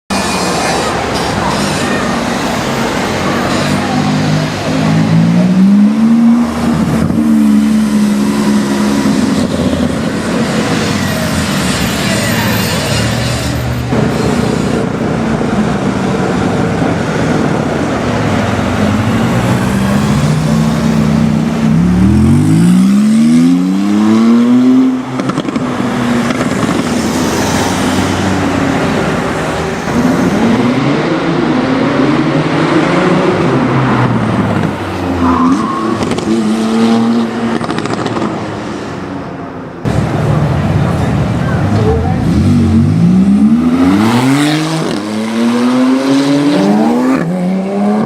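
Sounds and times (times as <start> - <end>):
street traffic: 0.1 - 48.0
car engine revving: 39.9 - 48.0.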